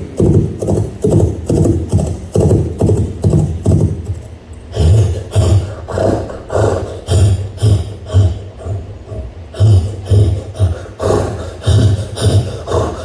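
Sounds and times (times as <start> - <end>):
clip-clop steps: 0.0 - 4.3.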